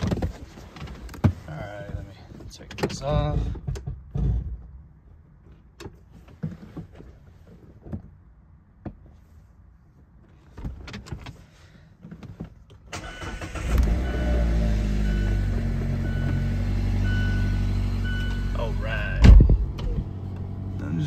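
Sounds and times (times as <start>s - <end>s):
car engine cranking and starting: 12.8s - 21.0s.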